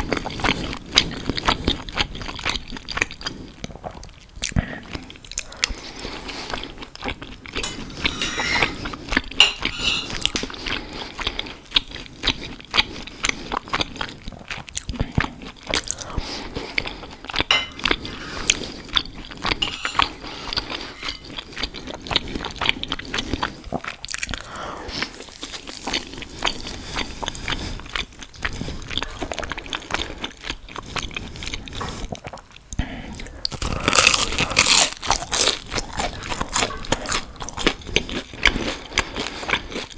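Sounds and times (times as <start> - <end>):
biting and chewing: 33.4 - 39.9.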